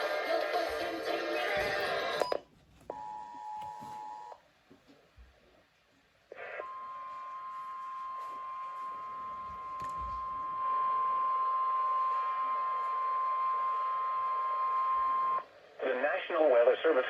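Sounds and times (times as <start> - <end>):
music: 0.0 - 2.3.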